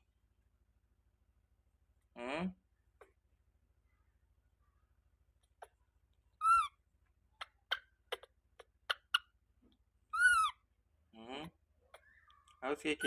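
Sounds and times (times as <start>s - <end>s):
baby monkey squealing: 6.4s - 6.8s, 7.4s - 9.4s, 10.1s - 10.7s, 11.9s - 13.0s.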